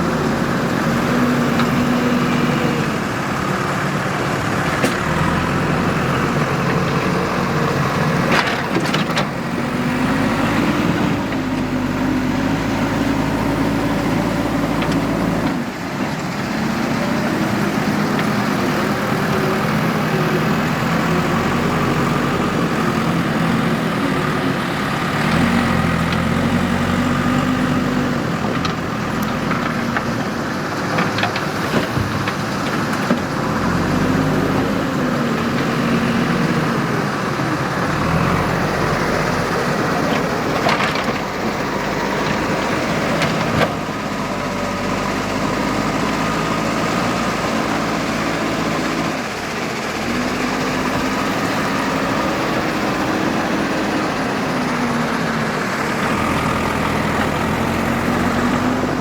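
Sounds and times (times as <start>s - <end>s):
diesel engine revving under load: 0.0s - 59.0s
clatter of knocks: 28.5s - 33.3s.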